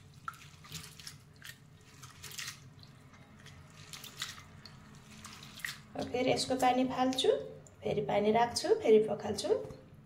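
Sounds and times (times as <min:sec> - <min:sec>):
lentils rubbed by hand in water: 0:00.0 - 0:06.8
light water splashes: 0:00.0 - 0:07.9.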